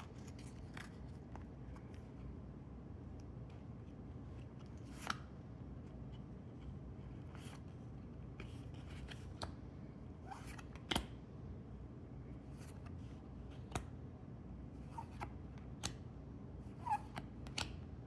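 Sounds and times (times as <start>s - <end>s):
cards flicking and rustling: 0.0s - 2.4s, 3.5s - 9.7s, 10.3s - 11.2s, 16.7s - 18.0s.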